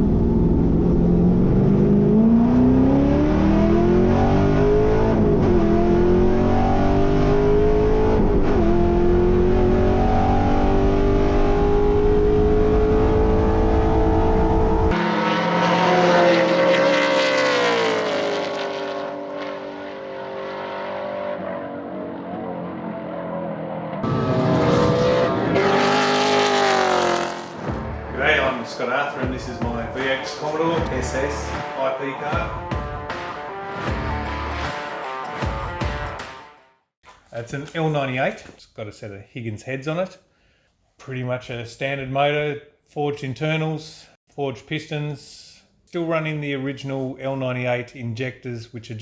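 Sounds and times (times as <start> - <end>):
race car engine accelerating: 0.0 - 32.4.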